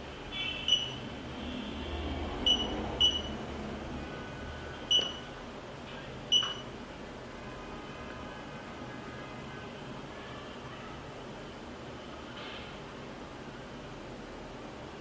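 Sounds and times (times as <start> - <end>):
high key-press beeps: 0.6 - 1.0, 2.4 - 3.4, 4.9 - 5.4, 6.3 - 6.7.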